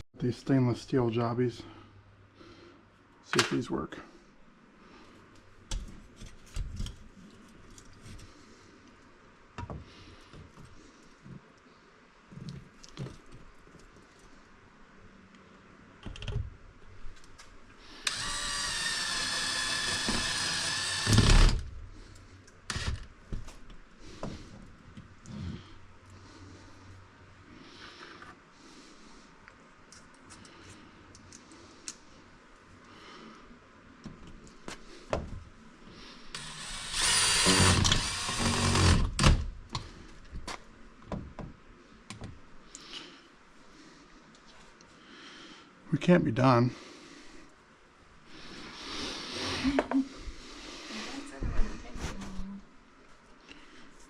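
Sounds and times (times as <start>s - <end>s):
power drill whine: 18.0s - 21.7s, 22.7s - 23.1s, 36.3s - 39.3s.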